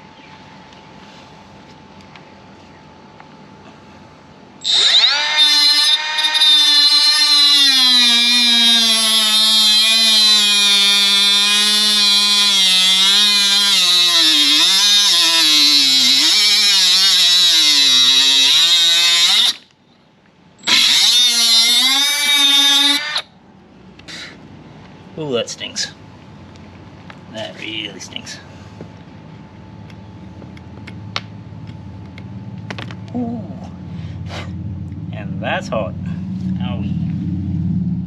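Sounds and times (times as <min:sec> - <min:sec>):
cordless power tool whining: 0:04.6 - 0:19.7, 0:20.6 - 0:23.3.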